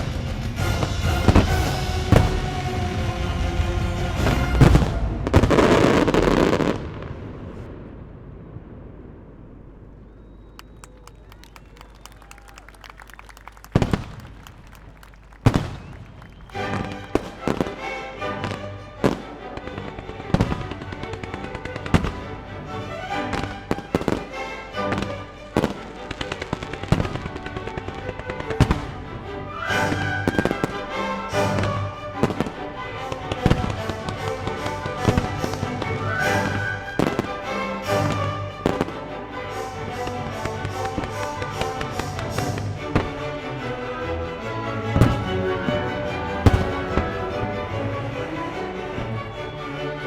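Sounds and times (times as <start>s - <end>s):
music: 0.0s - 6.7s, 13.0s - 50.0s
firework shells bursting: 13.5s - 17.8s.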